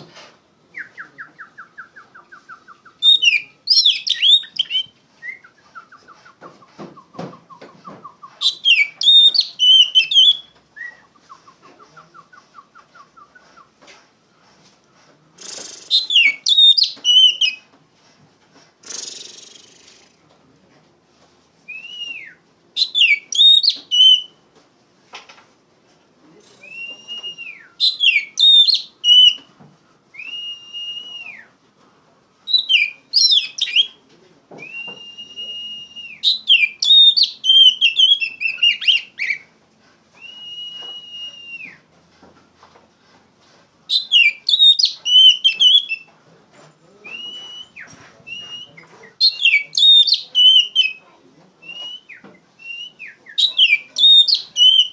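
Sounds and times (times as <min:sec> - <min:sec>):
bird singing: 0:00.8 - 0:06.2, 0:07.0 - 0:11.4, 0:15.9 - 0:17.6, 0:22.1 - 0:24.3, 0:26.8 - 0:29.5, 0:32.5 - 0:33.9, 0:36.2 - 0:39.4, 0:43.9 - 0:46.1, 0:47.1 - 0:51.0, 0:51.7 - 0:54.9.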